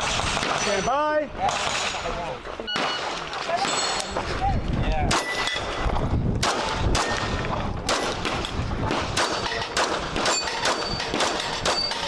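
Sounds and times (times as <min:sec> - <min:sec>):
pistol shots: 0:00.0 - 0:02.1, 0:05.1 - 0:05.8, 0:06.4 - 0:12.0.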